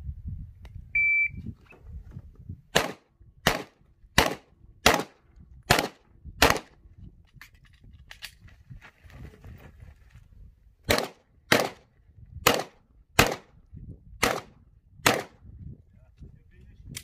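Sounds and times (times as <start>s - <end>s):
pistol shots: 2.7s - 6.7s, 10.9s - 11.8s, 12.4s - 13.5s, 14.2s - 15.4s.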